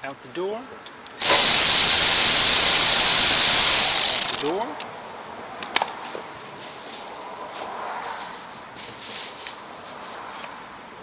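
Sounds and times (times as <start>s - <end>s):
tools clicking and rustling: 1.2s - 4.9s.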